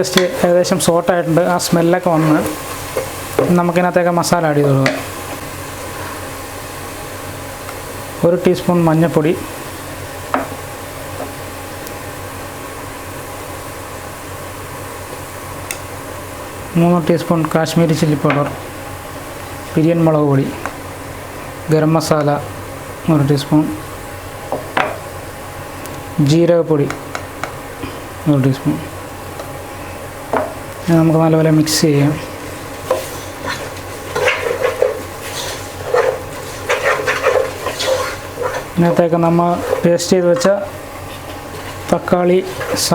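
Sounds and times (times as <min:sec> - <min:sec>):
food cooking hiss: 0:00.0 - 0:42.9
oil sizzling: 0:00.0 - 0:42.9
utensil scraping a pan: 0:32.2 - 0:42.9.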